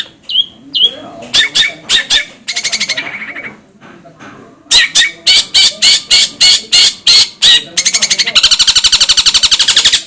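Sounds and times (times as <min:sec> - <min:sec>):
shrike singing: 0:00.0 - 0:03.6.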